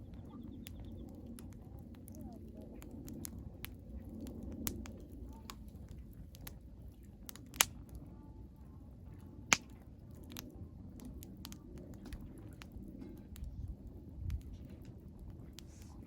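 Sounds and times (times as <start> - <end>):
campfire crackling: 0.0 - 16.0
loud sharp pops: 9.5 - 9.7.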